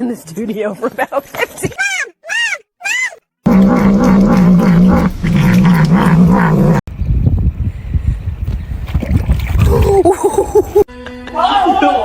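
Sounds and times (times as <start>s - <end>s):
pet animal wavering vocal sound: 1.8s - 6.8s.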